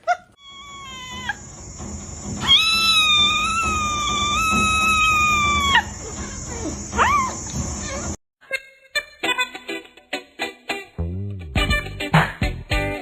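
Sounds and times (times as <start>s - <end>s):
cat yowling: 0.4s - 1.5s, 2.4s - 8.2s.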